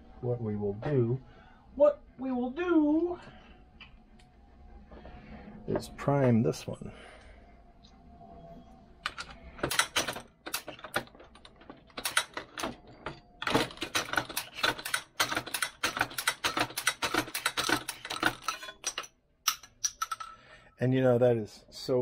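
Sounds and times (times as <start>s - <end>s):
press clicking and rattling: 9.0s - 20.2s.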